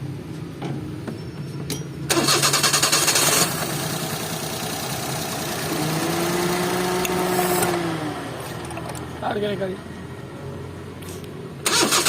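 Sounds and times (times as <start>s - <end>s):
car engine starter cranking: 2.1s - 3.6s, 11.6s - 12.0s
car engine running: 2.1s - 9.8s.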